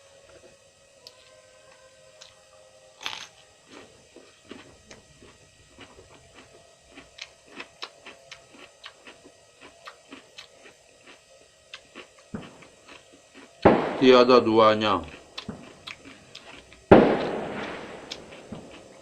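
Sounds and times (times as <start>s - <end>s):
person chewing crunchy vegetables: 3.0s - 13.7s, 14.9s - 19.0s.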